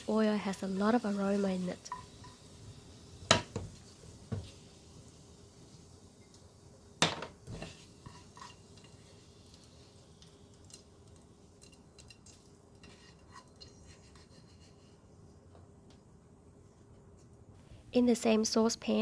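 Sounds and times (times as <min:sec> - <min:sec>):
metal utensil clanking on pan: 0:01.8 - 0:02.4, 0:08.0 - 0:08.9
utensil scraping pan: 0:07.6 - 0:08.9, 0:12.8 - 0:15.0.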